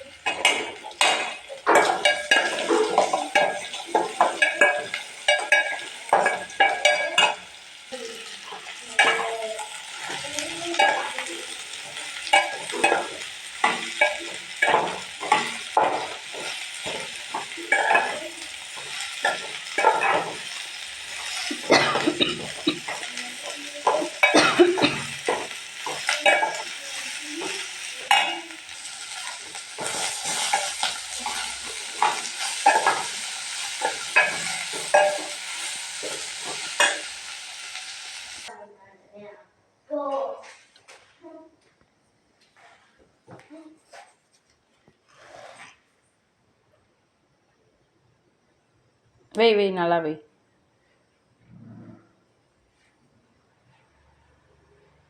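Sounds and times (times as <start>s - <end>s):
frying sizzle: 0.0s - 38.5s
metal spoon scraping a pan: 0.0s - 38.5s, 45.0s - 45.9s
spoon knocking against pan: 11.8s - 20.6s.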